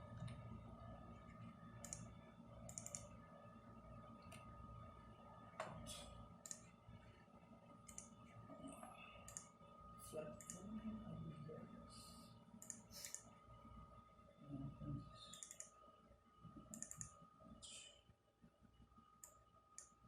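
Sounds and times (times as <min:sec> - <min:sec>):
faint steady hum: 0:00.0 - 0:20.0
keyboard and mouse clicking: 0:01.8 - 0:02.1, 0:02.7 - 0:03.1, 0:06.4 - 0:06.7, 0:07.9 - 0:08.2, 0:09.2 - 0:09.5, 0:12.6 - 0:13.3, 0:15.3 - 0:15.7, 0:16.7 - 0:17.2.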